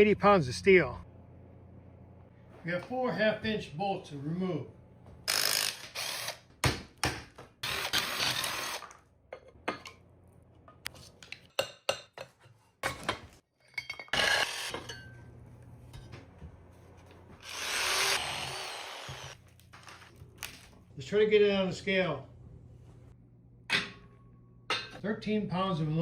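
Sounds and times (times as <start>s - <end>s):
power tool bursts: 5.3s - 6.4s, 17.4s - 19.4s.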